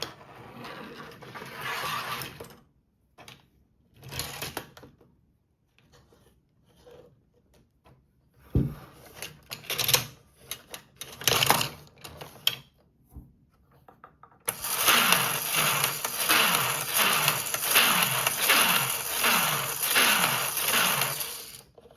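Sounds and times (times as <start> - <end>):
plastic toy parts clicking and rattling: 9.0 - 12.7, 13.8 - 21.9.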